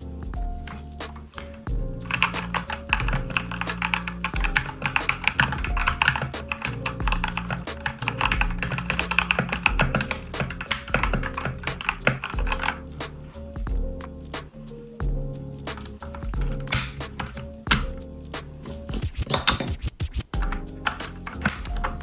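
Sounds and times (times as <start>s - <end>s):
background music: 0.0s - 22.0s
mechanical keyboard typing: 1.1s - 12.9s, 15.7s - 18.0s, 20.4s - 22.0s.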